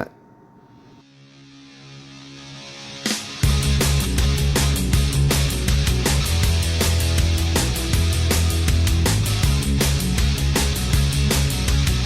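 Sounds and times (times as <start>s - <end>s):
instrumental music with drum beat: 3.0s - 12.0s
bass line: 3.4s - 12.0s.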